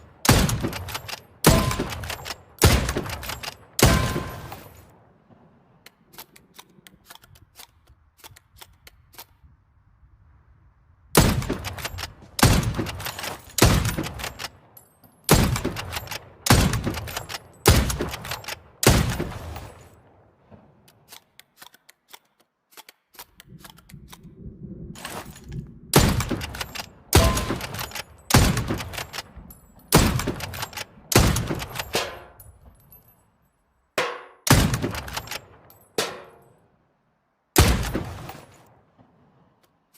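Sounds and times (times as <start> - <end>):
rifle shots with echo: 0.0 - 5.4, 11.2 - 20.6, 25.9 - 32.4, 34.0 - 36.5, 37.6 - 39.1.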